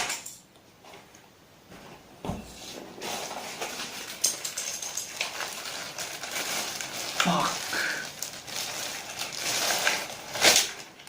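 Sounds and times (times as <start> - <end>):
plastic wrapper crinkling: 3.0 - 11.0.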